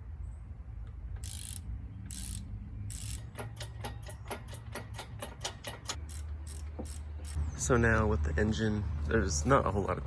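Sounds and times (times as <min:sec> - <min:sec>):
ratchet wrench clicking: 0:01.2 - 0:07.4.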